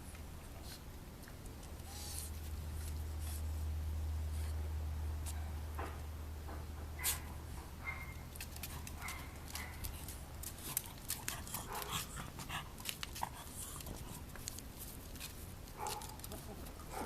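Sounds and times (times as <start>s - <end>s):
dogs scuffling: 7.0s - 17.0s.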